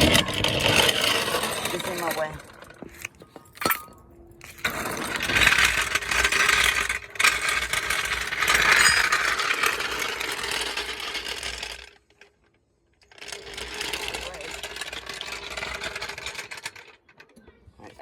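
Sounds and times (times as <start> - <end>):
metal jack stand scraping: 0.0 - 6.4, 8.0 - 10.4.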